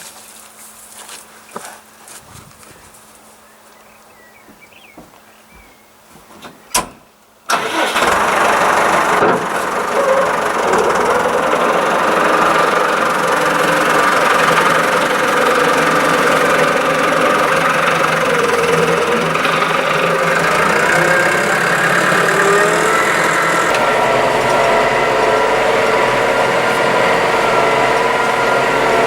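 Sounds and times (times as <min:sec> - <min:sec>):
tractor engine running: 0:07.5 - 0:29.0.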